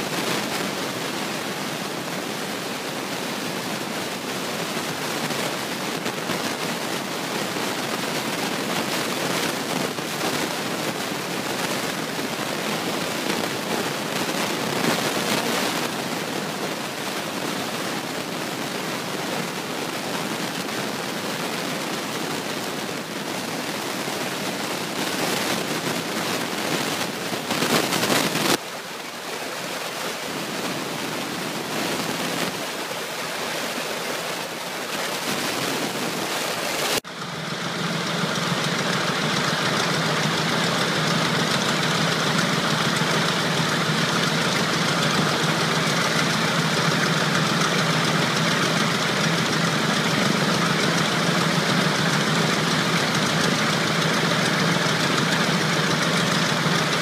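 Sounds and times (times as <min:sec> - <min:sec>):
radial aircraft engine running: 0:37.0 - 0:57.0.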